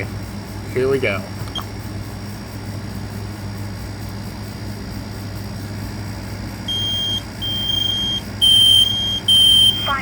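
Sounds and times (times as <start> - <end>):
smoke alarm beeping: 6.7 - 10.0.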